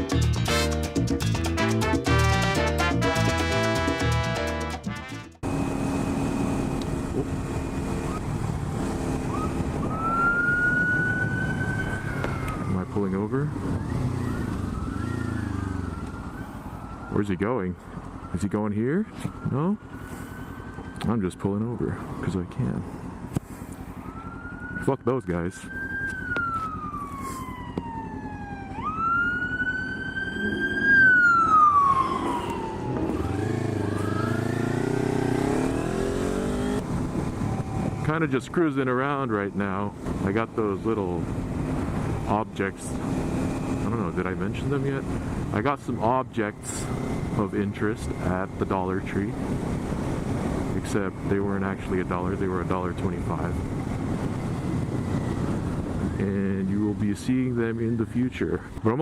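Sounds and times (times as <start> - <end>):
motorcycle engine: 1.0 - 17.1, 25.6 - 38.1, 42.9 - 56.4
emergency siren chirping and wailing: 5.4 - 39.3, 40.7 - 56.2
wind noise: 36.8 - 38.1, 53.2 - 56.4.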